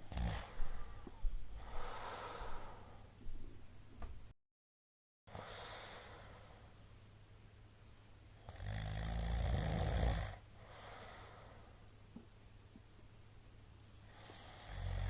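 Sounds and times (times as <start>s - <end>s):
man snoring: 0.0s - 0.6s, 8.4s - 11.0s, 14.1s - 15.0s
soft breathing: 0.4s - 3.6s, 5.3s - 7.0s, 10.6s - 11.9s.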